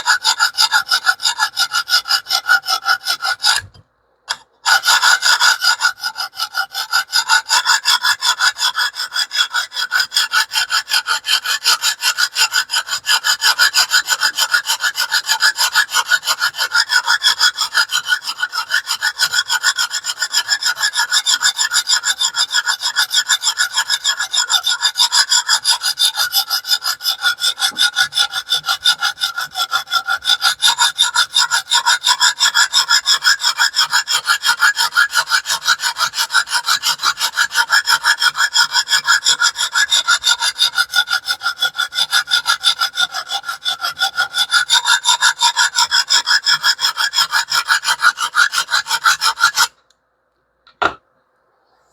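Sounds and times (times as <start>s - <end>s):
sharpening stone scraping knife edge: 0.0s - 25.6s.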